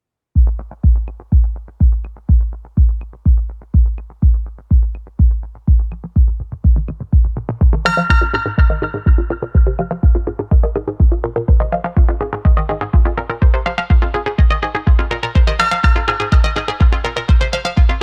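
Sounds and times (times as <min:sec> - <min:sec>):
electronic music with kick drum: 0:00.4 - 0:18.0
bright synth chord: 0:07.9 - 0:10.4.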